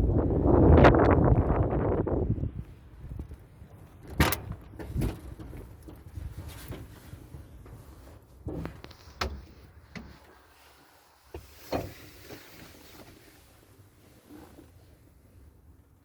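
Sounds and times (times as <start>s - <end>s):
clunks and knocks: 4.0s - 7.0s, 7.6s - 10.3s.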